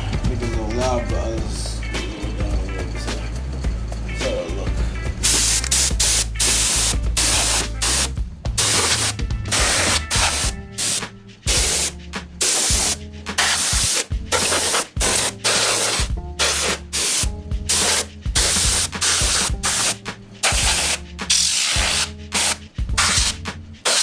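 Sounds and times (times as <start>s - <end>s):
background music with bass line: 0.0s - 24.0s
compressed air hissing blasts: 5.2s - 24.0s.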